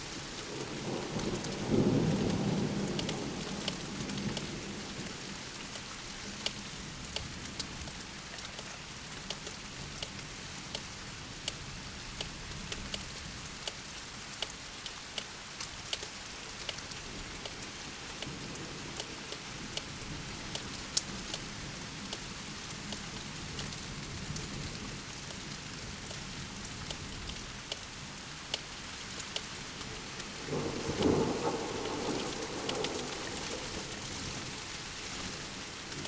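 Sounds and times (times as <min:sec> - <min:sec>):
steady rain: 0:00.0 - 0:36.0
thunder rumble: 0:30.3 - 0:36.0.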